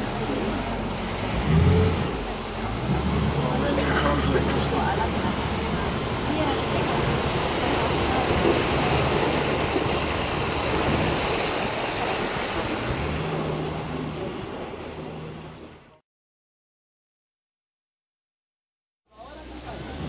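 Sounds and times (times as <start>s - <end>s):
boat motor humming: 0.0s - 16.0s, 19.1s - 20.0s
water noise: 0.0s - 16.0s, 19.1s - 20.0s.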